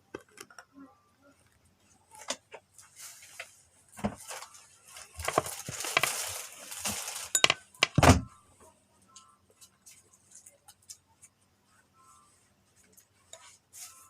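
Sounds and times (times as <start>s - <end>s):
rustling: 1.3s - 8.0s
objects knocking and clinking: 7.3s - 8.3s.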